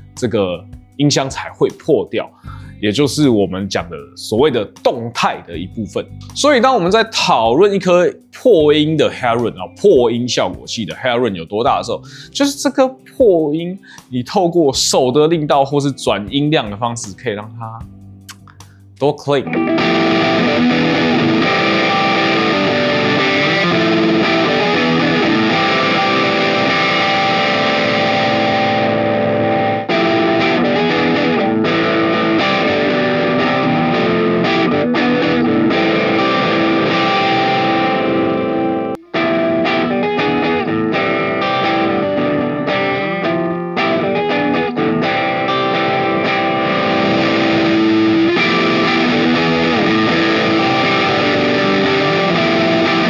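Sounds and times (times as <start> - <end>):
distorted electric guitar: 19.4 - 53.0.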